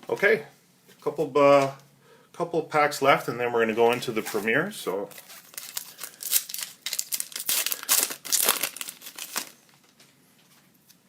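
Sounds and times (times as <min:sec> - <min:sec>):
wrapper tearing and crinkling: 0:05.1 - 0:09.7.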